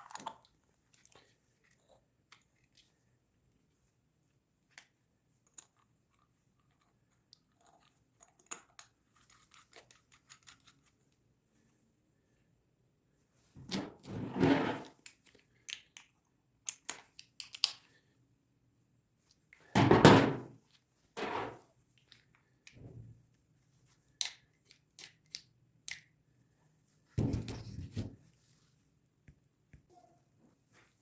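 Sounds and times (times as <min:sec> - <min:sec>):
parts set down with dull thunks: 0:19.8 - 0:20.5.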